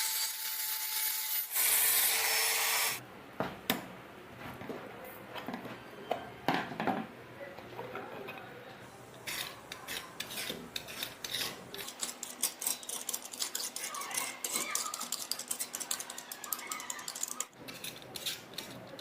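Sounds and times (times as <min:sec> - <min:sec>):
hand tool scraping metal: 0:09.2 - 0:19.0.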